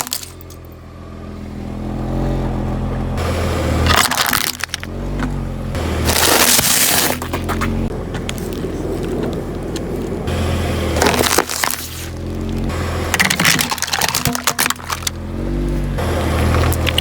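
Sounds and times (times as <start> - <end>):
car running slowly: 0.0 - 17.0
tyres crunching brittle objects: 3.8 - 5.4, 6.0 - 10.2, 11.0 - 17.0.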